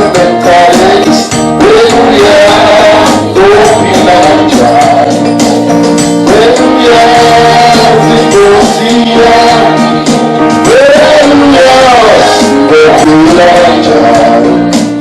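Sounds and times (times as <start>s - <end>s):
tambourine-like percussion: 0.0s - 11.3s
instrumental backing: 0.0s - 15.0s
voices singing gospel song: 0.0s - 15.0s.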